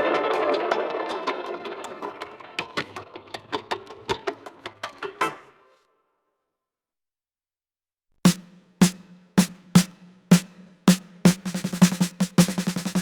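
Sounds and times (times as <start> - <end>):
drum hits and snare roll: 8.3 - 13.0.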